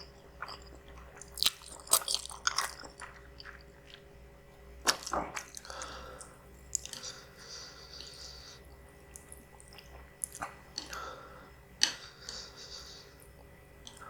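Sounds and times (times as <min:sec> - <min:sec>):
person chewing noodles: 0:00.4 - 0:04.1, 0:04.8 - 0:11.3.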